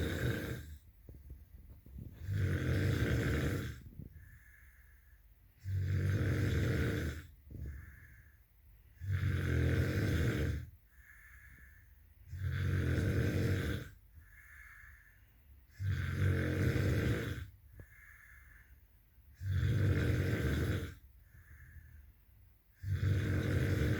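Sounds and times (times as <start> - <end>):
person snoring: 0.0 - 0.8, 2.0 - 4.9, 5.6 - 8.3, 9.0 - 11.7, 12.3 - 15.1, 15.7 - 21.8, 22.8 - 23.9
faint breathing: 0.0 - 9.2, 10.0 - 12.5, 13.4 - 19.8, 20.5 - 23.9.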